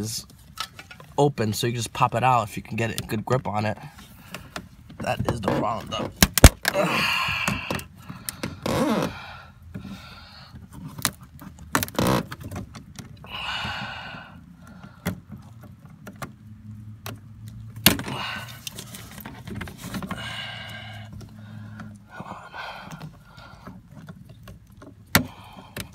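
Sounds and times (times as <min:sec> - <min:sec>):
plastic and metal parts rattling: 0:10.6 - 0:13.2, 0:17.0 - 0:20.4, 0:22.8 - 0:25.9.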